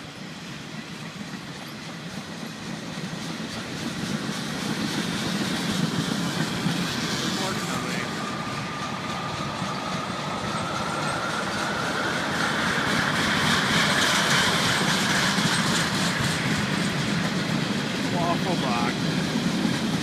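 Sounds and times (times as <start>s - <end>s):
clickety-clack of wheels: 0.0s - 20.0s
train wheels rushing on rail: 0.0s - 20.0s
high wheel squeal: 5.2s - 17.5s.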